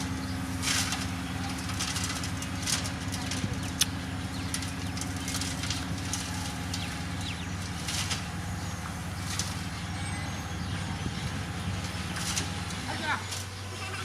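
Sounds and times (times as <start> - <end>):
heavy diesel machinery running: 0.0 - 14.0
short crackles: 0.6 - 8.4.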